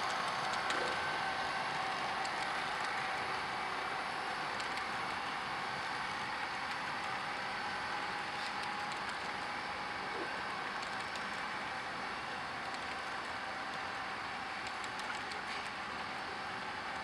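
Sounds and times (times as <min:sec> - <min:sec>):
model train rolling on track: 0:00.0 - 0:17.0
faint clicks: 0:02.2 - 0:03.4, 0:04.6 - 0:05.2, 0:08.4 - 0:09.3, 0:10.7 - 0:11.4, 0:12.6 - 0:13.3, 0:14.6 - 0:15.8.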